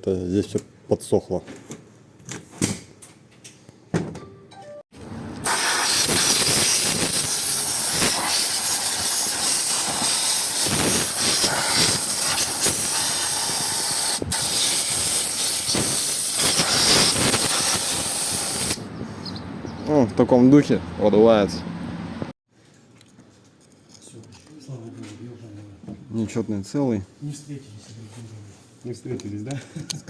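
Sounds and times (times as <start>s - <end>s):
compressed air blow gun hissing: 5.4s - 18.8s.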